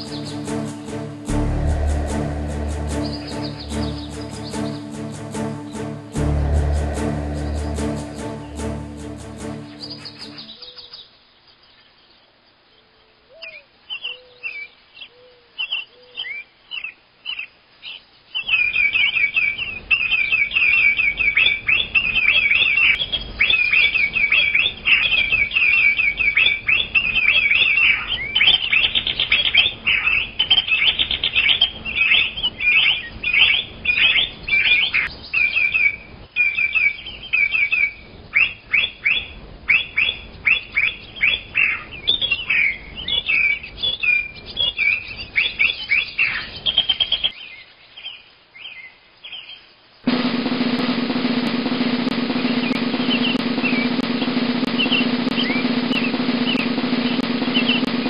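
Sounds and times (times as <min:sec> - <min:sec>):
short low bird notes: 0:01.3 - 0:04.9
small birds chirping: 0:09.6 - 0:50.0.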